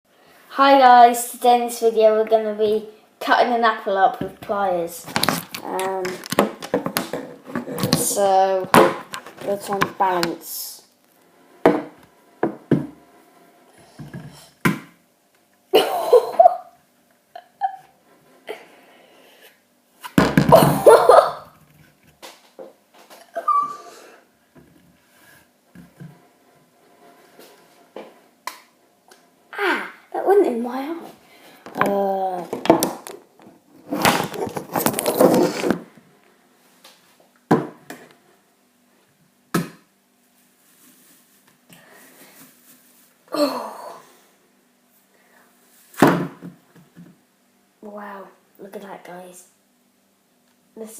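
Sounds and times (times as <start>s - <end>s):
apple being crushed: 33.9s - 35.8s.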